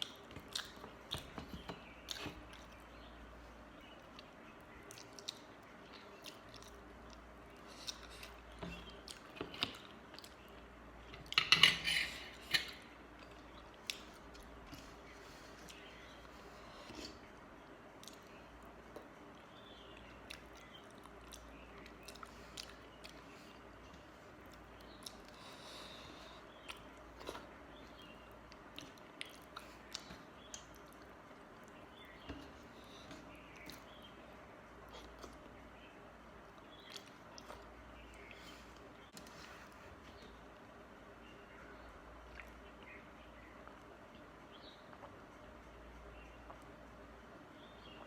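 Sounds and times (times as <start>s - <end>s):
wet chewing: 0.0s - 3.1s, 3.8s - 10.6s, 16.9s - 34.1s.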